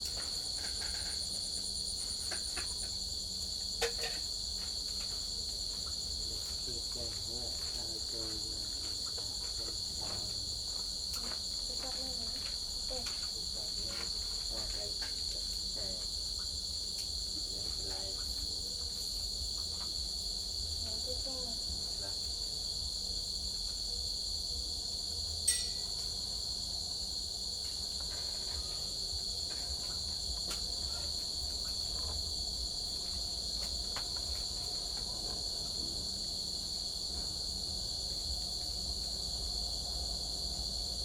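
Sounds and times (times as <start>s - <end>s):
crickets chirping: 0.0s - 41.0s.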